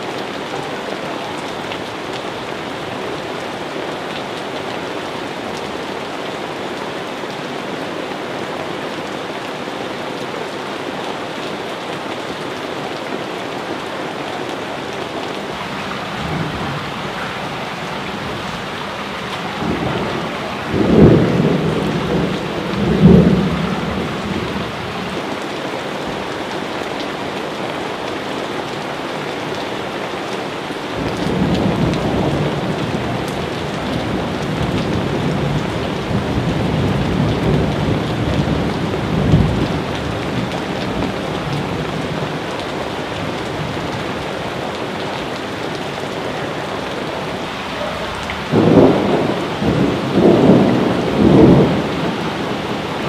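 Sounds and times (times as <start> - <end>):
steady rain hissing: 0.0 - 53.0
thunder rumbling: 15.0 - 25.2, 45.4 - 53.0.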